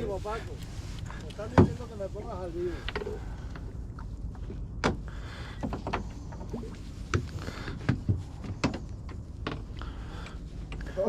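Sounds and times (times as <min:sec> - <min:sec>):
low steady rumble: 0:00.0 - 0:11.0
knocks and clicks of fishing tackle: 0:01.2 - 0:01.8, 0:05.6 - 0:10.8.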